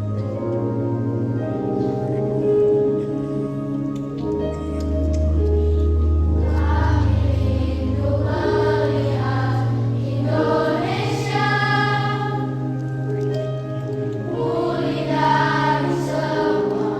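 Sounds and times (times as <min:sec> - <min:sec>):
low accompaniment notes: 0:00.0 - 0:16.9
children's choir singing: 0:06.4 - 0:13.7, 0:14.3 - 0:16.9.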